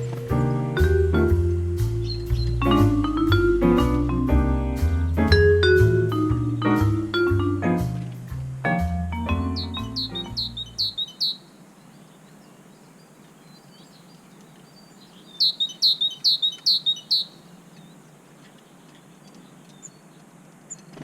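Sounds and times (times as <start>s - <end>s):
songbird chirping: 0.0s - 21.0s.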